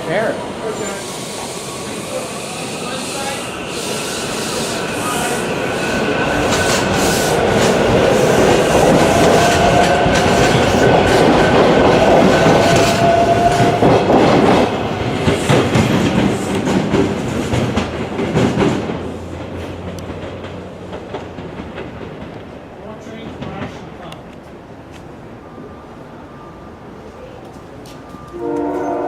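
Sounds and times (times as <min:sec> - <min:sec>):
train wheels clattering over rail joints: 0:06.4 - 0:23.9.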